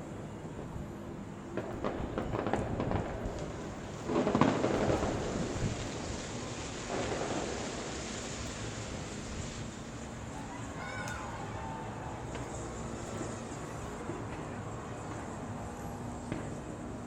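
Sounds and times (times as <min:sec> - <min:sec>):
firework booms: 0:01.5 - 0:10.2
firework cracks: 0:01.5 - 0:17.0.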